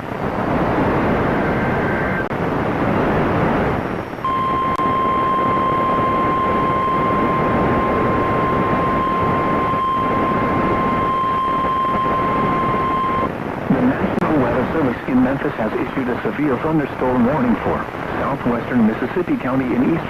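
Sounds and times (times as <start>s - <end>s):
radio static hiss: 0.0s - 20.0s
steady alarm tone: 4.2s - 13.3s.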